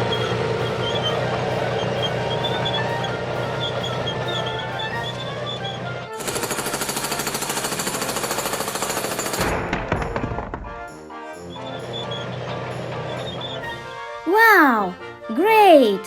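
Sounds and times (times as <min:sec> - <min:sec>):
background music: 0:00.0 - 0:06.8, 0:09.5 - 0:16.0
rapid mechanical rattle: 0:06.2 - 0:09.5.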